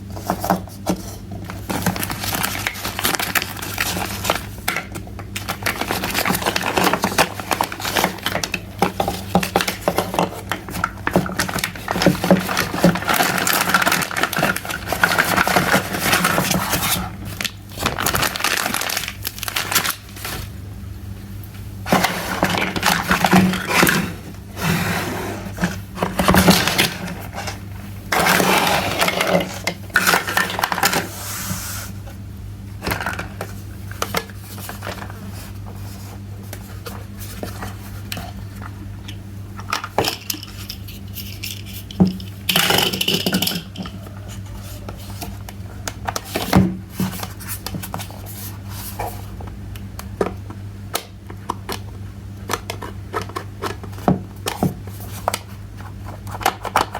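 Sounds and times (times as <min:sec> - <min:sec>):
rustling and scraping: 0:00.0 - 0:04.6, 0:21.9 - 0:32.2, 0:32.8 - 0:38.8
steady low hum: 0:00.0 - 0:56.9
plastic toy pieces clattering: 0:28.1 - 0:31.1, 0:39.6 - 0:43.9.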